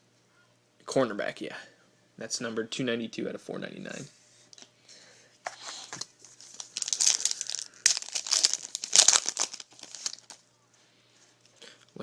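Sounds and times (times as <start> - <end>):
wrapper tearing and crinkling: 6.2 - 10.4.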